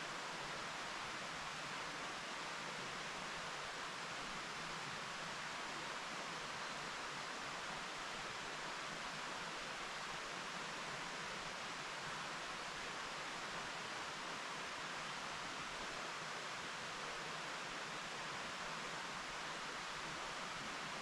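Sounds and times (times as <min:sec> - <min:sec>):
stream flowing over rocks: 0:00.0 - 0:21.0.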